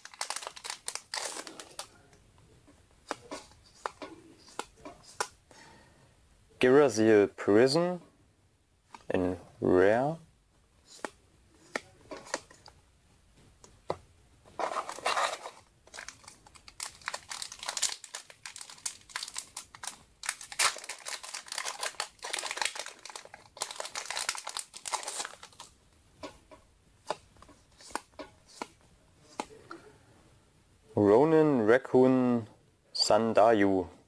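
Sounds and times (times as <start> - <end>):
wrapper tearing and crinkling: 0.0 - 1.9, 14.7 - 25.7.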